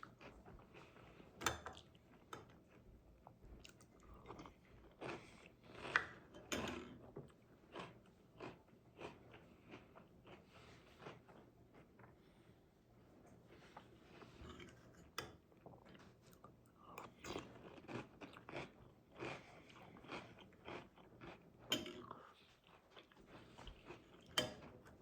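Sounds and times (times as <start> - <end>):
person chewing crunchy cereal: 0.0 - 6.3, 7.3 - 12.2, 15.7 - 24.4.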